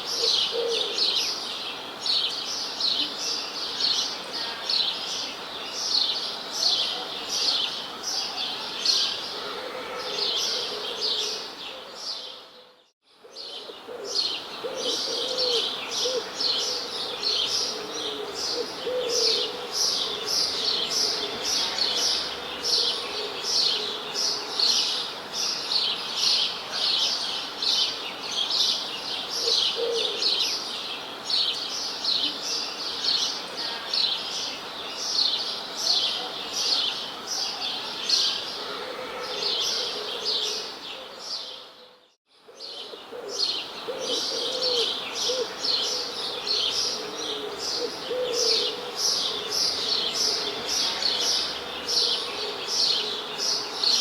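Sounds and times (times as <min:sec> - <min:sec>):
lower wavering bird calls: 0:09.3 - 0:25.0, 0:36.7 - 0:54.0.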